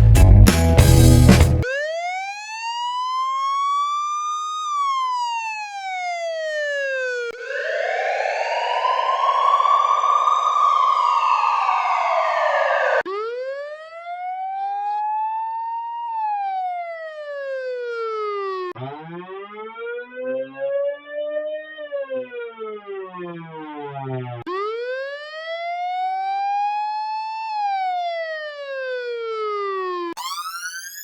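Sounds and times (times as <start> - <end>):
fire truck siren wailing: 1.6 - 18.7, 24.5 - 31.0.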